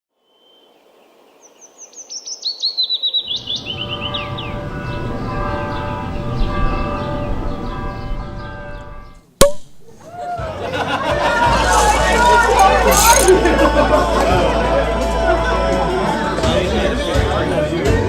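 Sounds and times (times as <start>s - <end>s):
bird chirping: 0.2s - 9.2s.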